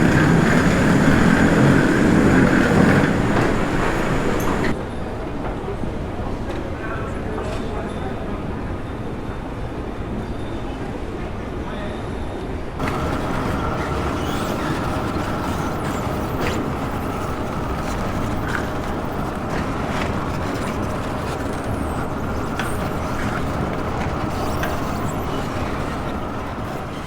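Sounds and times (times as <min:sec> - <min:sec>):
jet engines roaring: 0:00.0 - 0:04.8, 0:12.8 - 0:27.0
rushing air in cabin: 0:00.0 - 0:04.8, 0:12.8 - 0:27.0
faint steady tones: 0:12.8 - 0:27.0.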